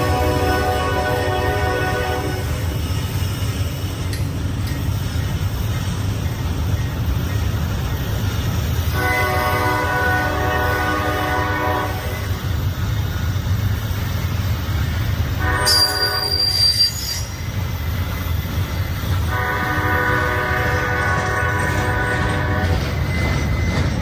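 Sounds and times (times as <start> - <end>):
locomotive horn blasts: 0.0 - 2.7, 8.9 - 12.4, 15.4 - 17.3, 19.3 - 22.9
train rumbling past: 0.0 - 24.0
high squeal: 15.6 - 19.2, 22.9 - 24.0.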